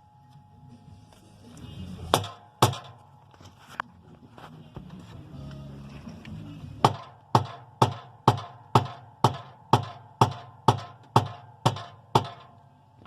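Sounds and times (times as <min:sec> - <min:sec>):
rubber mallet striking bushing: 0:02.1 - 0:03.0, 0:06.8 - 0:12.6.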